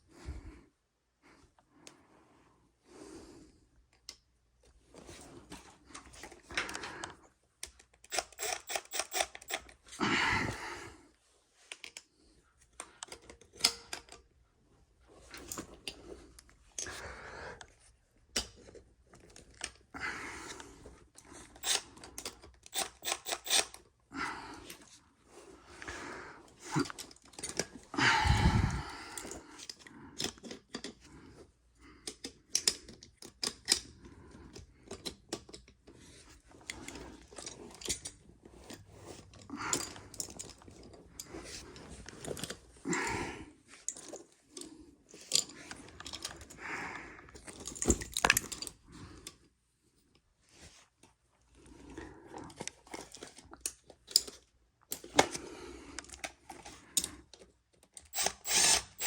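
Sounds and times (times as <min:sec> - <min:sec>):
tools clicking and clinking: 0:05.9 - 0:10.0, 0:11.7 - 0:14.3, 0:21.2 - 0:23.9, 0:26.5 - 0:31.1, 0:32.0 - 0:42.7, 0:43.7 - 0:46.6, 0:47.2 - 0:49.4, 0:52.5 - 0:59.0.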